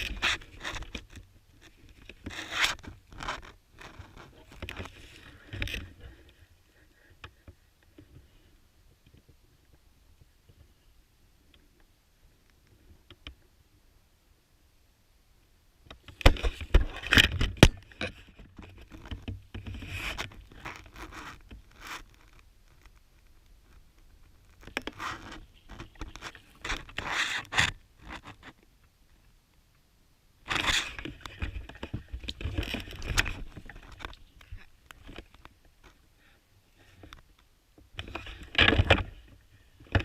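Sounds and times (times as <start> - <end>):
sharp clicks and crunches: 0.0 - 6.4, 15.9 - 28.7, 30.5 - 36.0, 36.8 - 40.0
rustling and scraping: 0.0 - 9.8, 15.9 - 28.7, 30.4 - 40.0.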